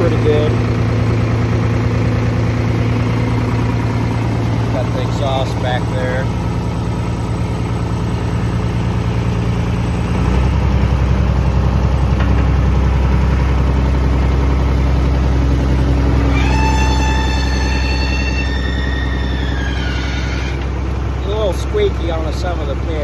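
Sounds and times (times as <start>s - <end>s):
diesel engine running: 0.0s - 23.0s
high steady squeal: 15.5s - 21.5s.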